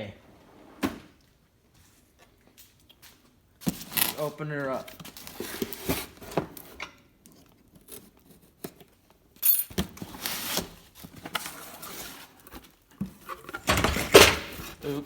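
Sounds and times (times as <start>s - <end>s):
cardboard rustling and scraping: 3.6s - 6.8s, 9.9s - 15.0s.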